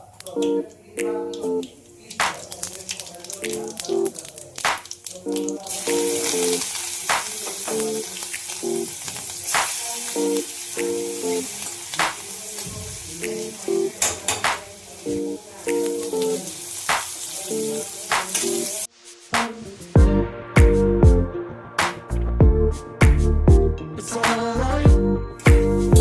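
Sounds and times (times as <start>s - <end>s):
stirring clicks and taps: 0.2s - 9.8s
food sizzling in a pan: 1.6s - 20.0s.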